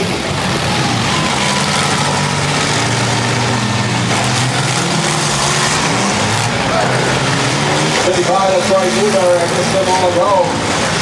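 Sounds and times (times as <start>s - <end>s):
demolition derby car engines: 0.0s - 11.0s.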